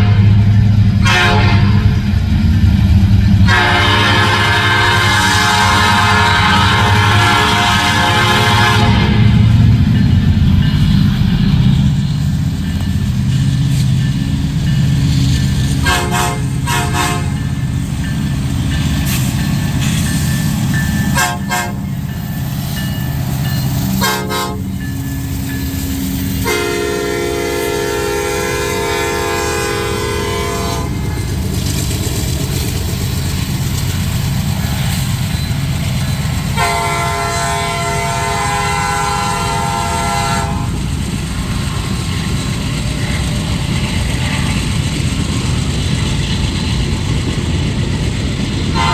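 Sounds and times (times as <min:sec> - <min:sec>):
locomotive air horn blasts: 0:00.0 - 0:02.0, 0:03.4 - 0:09.5, 0:15.8 - 0:17.4, 0:21.1 - 0:21.9, 0:24.0 - 0:24.8, 0:26.4 - 0:31.0, 0:36.5 - 0:40.8
diesel locomotives rumbling: 0:00.0 - 0:48.9.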